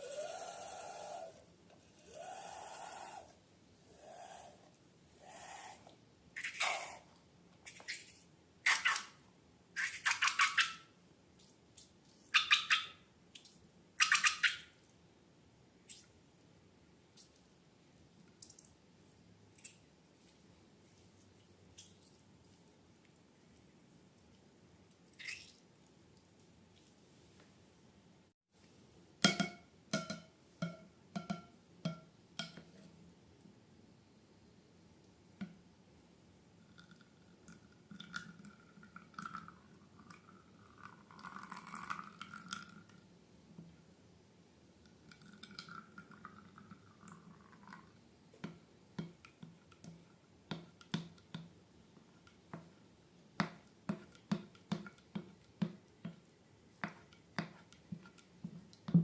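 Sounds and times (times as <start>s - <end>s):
slime squelching and hissing: 0.0s - 7.1s.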